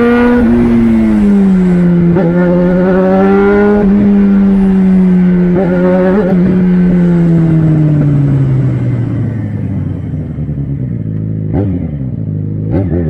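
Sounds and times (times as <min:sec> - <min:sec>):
motorcycle engine revving: 0:00.0 - 0:13.0.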